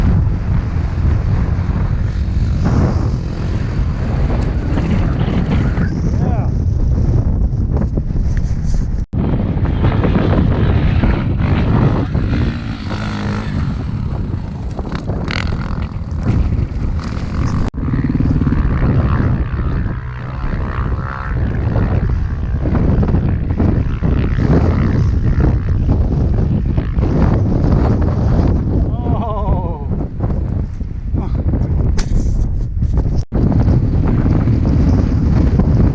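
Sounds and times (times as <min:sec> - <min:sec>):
vehicle engine running: 0:09.2 - 0:26.5.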